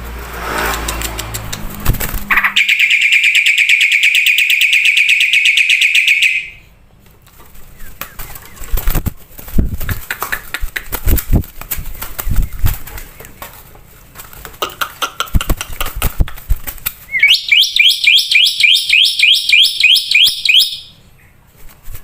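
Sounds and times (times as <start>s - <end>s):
bird clicks and sharp notes: 0.4s - 6.7s, 7.6s - 13.6s, 14.4s - 20.9s
starling rapid trill: 0.7s - 6.6s.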